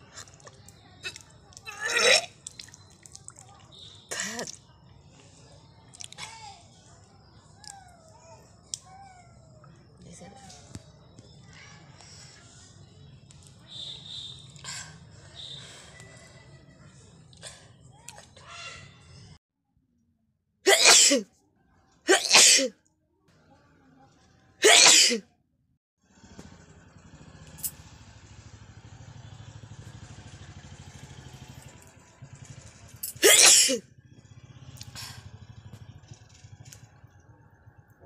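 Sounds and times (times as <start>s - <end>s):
person sneezing: 20.7s - 21.3s, 22.1s - 22.7s, 24.6s - 25.2s, 33.0s - 33.8s.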